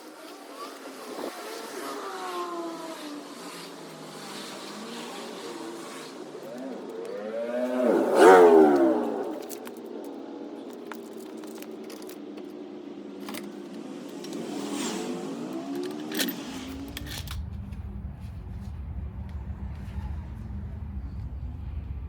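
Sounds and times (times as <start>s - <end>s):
low rumble: 16.8s - 22.0s.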